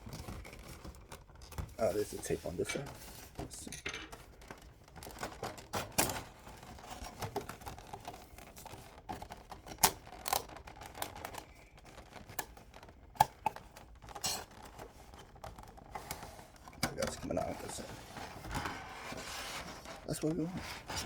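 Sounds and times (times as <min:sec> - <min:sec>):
packaging clicks and taps: 0:08.7 - 0:17.5.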